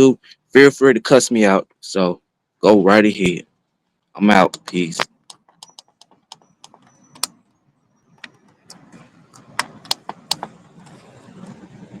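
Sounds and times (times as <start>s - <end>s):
handling clicks and knocks: 4.5s - 7.5s, 8.2s - 11.0s.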